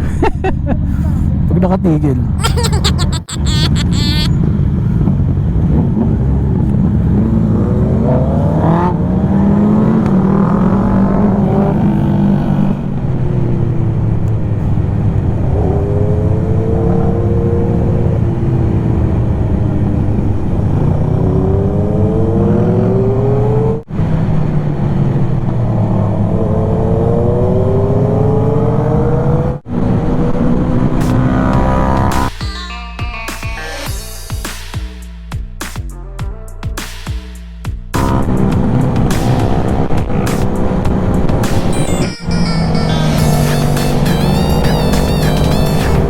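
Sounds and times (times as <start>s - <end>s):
motorcycle engine accelerating: 38.0s - 41.8s.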